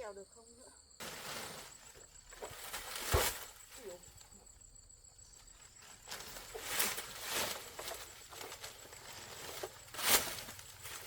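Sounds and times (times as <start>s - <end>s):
faint insect trill: 0.0s - 11.0s
scuffing and scraping of climbing: 5.7s - 11.0s.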